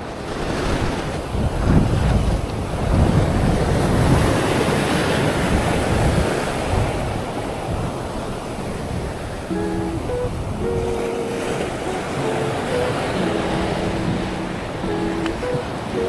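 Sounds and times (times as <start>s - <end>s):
surf breaking on shore: 0.0s - 16.0s
wind buffeting microphone: 0.2s - 15.9s
steady musical tones: 9.5s - 16.0s.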